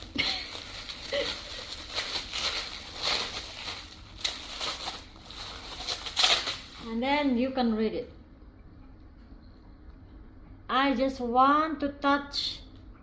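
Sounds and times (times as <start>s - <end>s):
gift packaging rustling: 0.0s - 7.0s.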